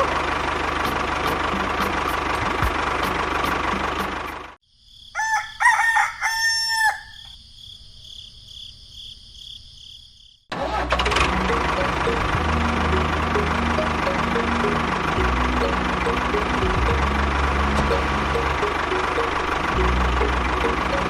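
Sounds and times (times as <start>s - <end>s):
small engine running: 0.0s - 4.6s, 10.5s - 21.0s
rooster crowing: 5.1s - 7.4s.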